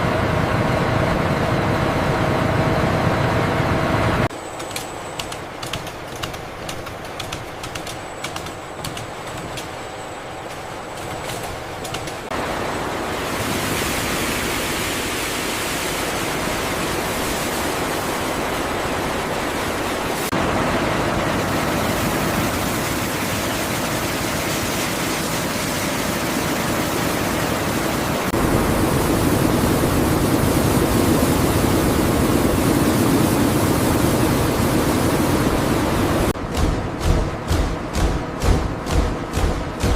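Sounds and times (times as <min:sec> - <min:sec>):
factory processing line rushing: 0:00.0 - 0:39.9.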